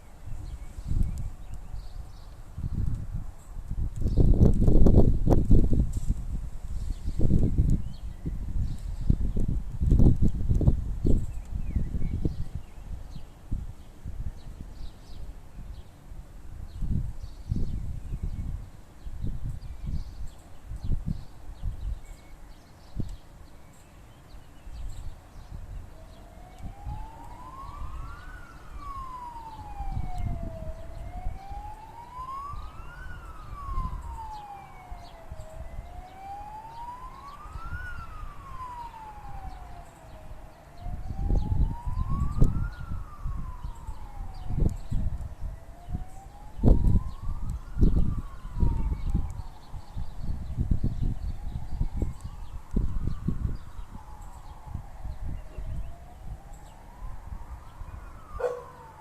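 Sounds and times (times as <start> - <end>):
emergency siren wailing: 24.8 - 59.0.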